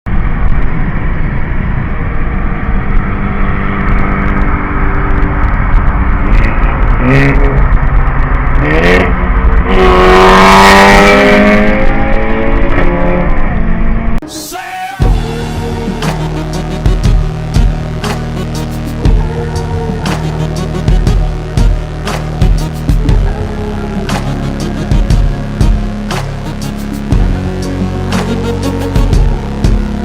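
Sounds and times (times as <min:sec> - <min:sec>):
car engine accelerating hard: 0:00.1 - 0:14.2.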